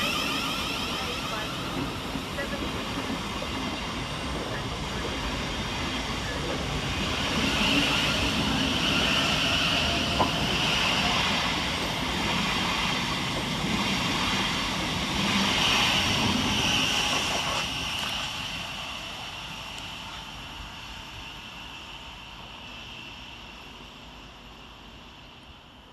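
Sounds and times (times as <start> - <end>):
high hiss: 0.0 - 2.4
train wheels on rails: 0.0 - 25.9.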